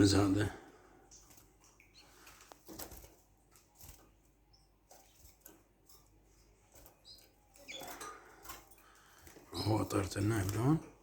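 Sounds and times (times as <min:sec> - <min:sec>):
finches chirping: 0:00.0 - 0:02.9, 0:03.6 - 0:10.8.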